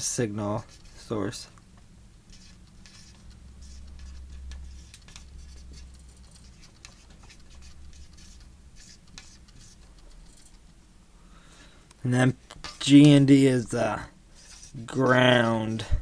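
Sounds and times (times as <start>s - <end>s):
low steady hum: 0.0s - 16.0s
pen scratching on paper: 0.6s - 1.1s, 2.3s - 10.6s, 12.6s - 13.1s, 14.3s - 15.9s.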